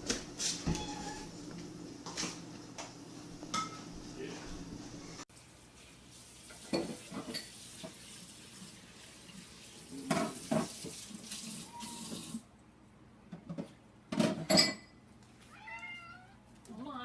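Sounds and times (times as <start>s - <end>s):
dishes clattering: 3.5s - 3.9s, 6.5s - 8.0s, 10.0s - 10.9s, 13.4s - 15.0s
tap running into a sink: 10.0s - 12.4s.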